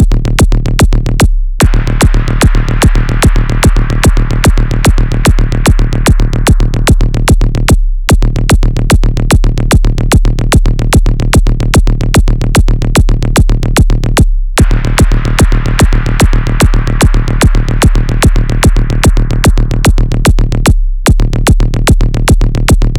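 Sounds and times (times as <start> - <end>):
techno music: 1.6 - 7.7, 14.6 - 20.7.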